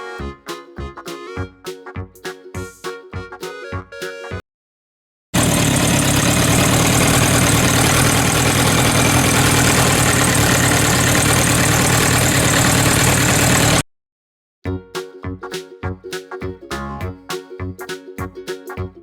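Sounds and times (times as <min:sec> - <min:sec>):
motorcycle engine idling: 0:05.4 - 0:13.8.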